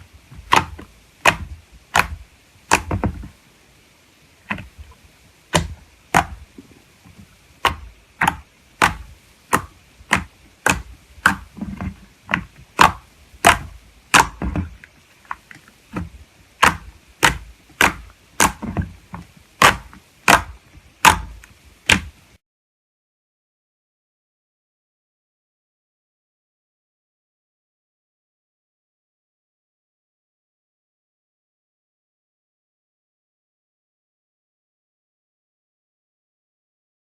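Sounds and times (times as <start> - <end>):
slime clicking pops: 19.6 - 22.1.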